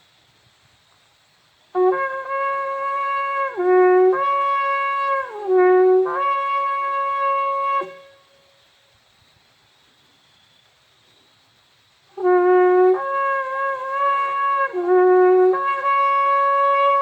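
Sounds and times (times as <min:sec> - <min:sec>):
shofar blast: 0:01.8 - 0:08.5, 0:12.2 - 0:17.0.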